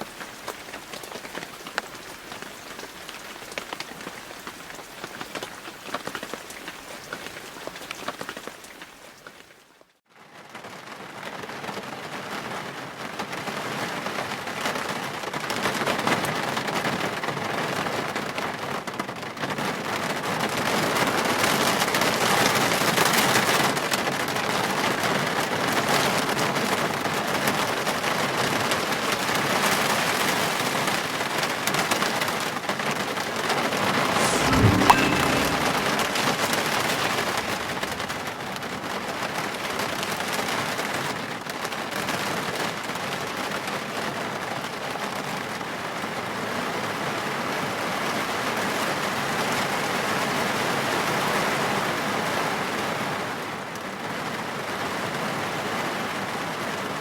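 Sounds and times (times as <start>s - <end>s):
heavy rain downpour: 0.0s - 9.1s, 33.9s - 41.8s
rain falling: 0.0s - 9.6s, 33.8s - 41.8s.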